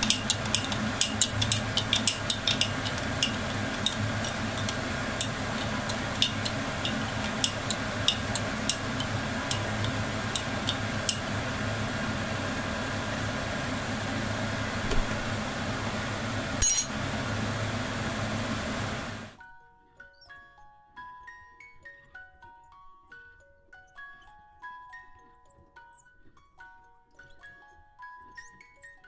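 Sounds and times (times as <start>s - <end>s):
utensil clinking against glass: 0.0s - 11.5s, 16.6s - 17.0s
steady low hum: 0.0s - 19.4s.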